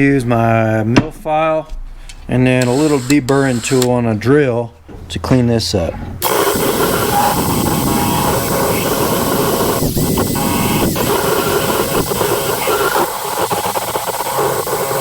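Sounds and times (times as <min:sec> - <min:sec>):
metal grinding: 0:02.5 - 0:04.2, 0:04.8 - 0:15.0
drill whine: 0:02.6 - 0:03.9, 0:06.2 - 0:15.0.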